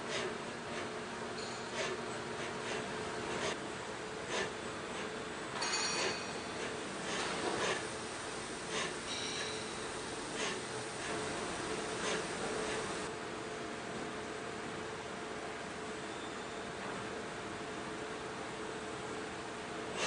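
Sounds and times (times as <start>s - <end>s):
machining center humming: 0.0s - 13.4s.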